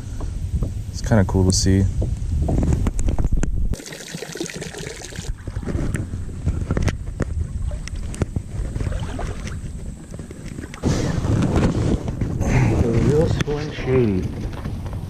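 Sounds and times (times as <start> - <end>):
wind buffeting microphone: 0.0 - 3.8, 5.2 - 15.0
hiss of moving water: 3.8 - 6.5.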